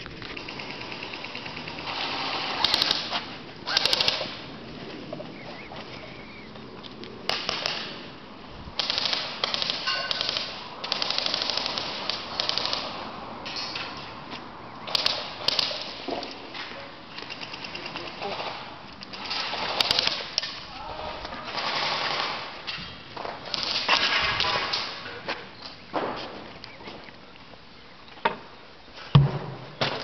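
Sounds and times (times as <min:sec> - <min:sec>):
airsoft gun bursts: 0:01.8 - 0:04.4, 0:08.8 - 0:13.0, 0:14.8 - 0:16.0, 0:19.3 - 0:20.4.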